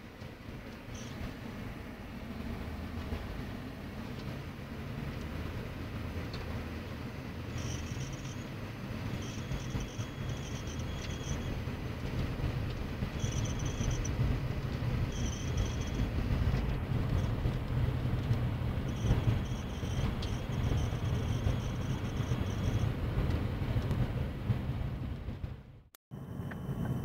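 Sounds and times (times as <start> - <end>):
high-pitched squeak: 7.5 - 11.6.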